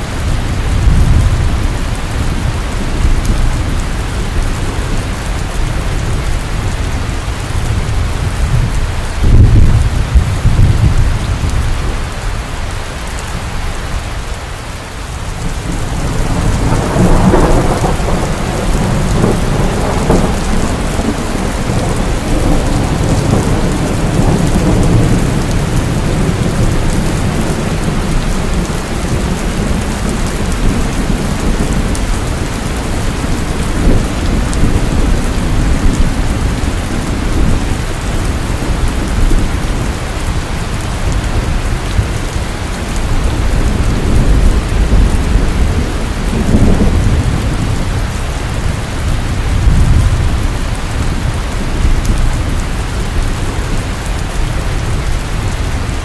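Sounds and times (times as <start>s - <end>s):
steady rain falling: 0.0s - 56.0s
deep rumble of thunder: 0.1s - 12.3s, 15.3s - 56.0s.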